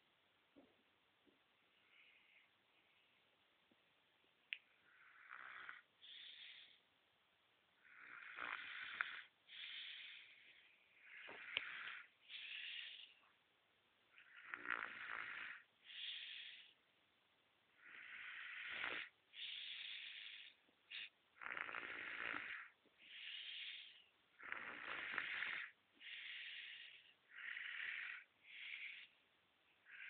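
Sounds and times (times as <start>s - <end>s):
baby snoring: 4.8s - 6.8s, 7.8s - 13.2s, 14.2s - 16.8s, 17.8s - 29.2s.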